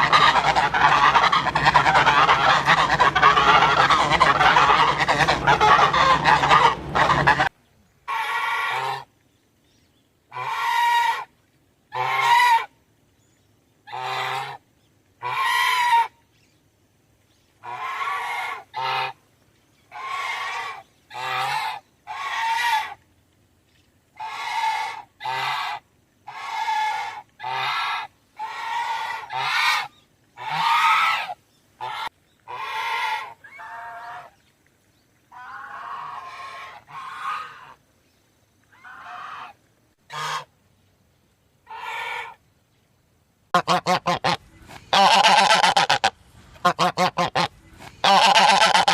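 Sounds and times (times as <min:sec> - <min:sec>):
geese honking: 0:00.0 - 0:07.5, 0:11.9 - 0:12.7, 0:24.2 - 0:34.3, 0:35.3 - 0:37.8, 0:38.8 - 0:40.5, 0:43.5 - 0:48.9.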